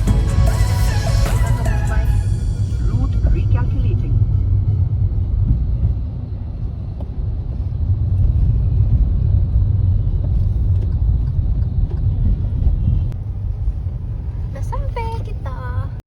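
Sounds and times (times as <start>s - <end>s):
motor vehicle rumble: 0.0s - 16.0s.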